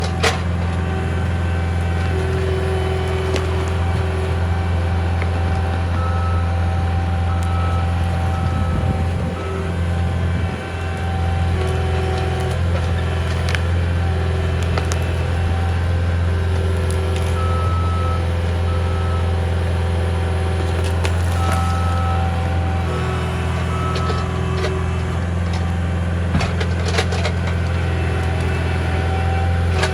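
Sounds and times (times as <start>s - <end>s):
diesel engine running under load: 0.0s - 29.9s
reversing alarm: 0.0s - 29.9s
beeping tones: 6.0s - 6.6s, 7.3s - 9.7s.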